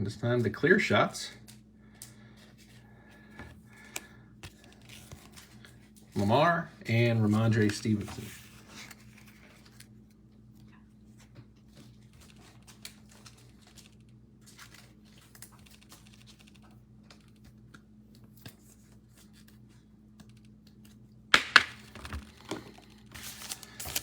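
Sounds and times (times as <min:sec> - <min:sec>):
trading cards being shuffled: 0:03.8 - 0:10.0, 0:11.6 - 0:24.0
wrapper crinkling being torn open: 0:11.9 - 0:17.5, 0:22.2 - 0:24.0.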